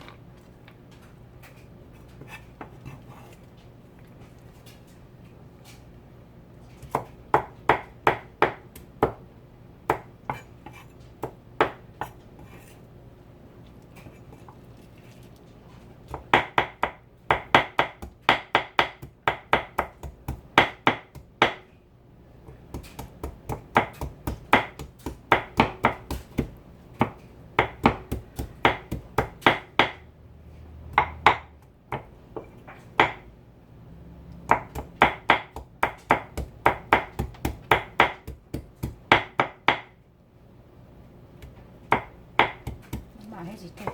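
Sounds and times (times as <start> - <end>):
knife chopping on cutting board: 6.8 - 9.2, 9.9 - 12.7, 16.1 - 21.7, 22.5 - 30.0, 30.9 - 33.3, 34.5 - 39.9, 41.4 - 43.2.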